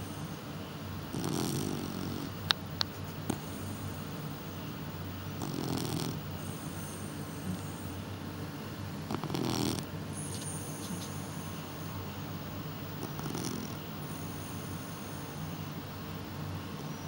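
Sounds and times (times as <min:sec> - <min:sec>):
pet snoring: 0:01.1 - 0:02.4, 0:03.2 - 0:04.0, 0:05.3 - 0:07.9, 0:09.0 - 0:11.5, 0:13.0 - 0:15.4.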